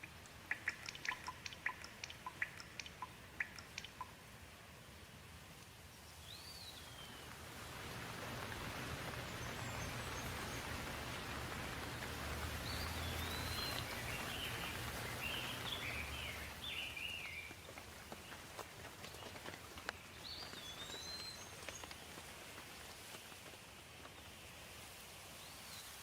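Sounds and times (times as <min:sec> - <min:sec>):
bird chirping: 0:00.0 - 0:04.2, 0:06.0 - 0:07.4, 0:08.2 - 0:22.1
steady rain falling: 0:00.0 - 0:26.0.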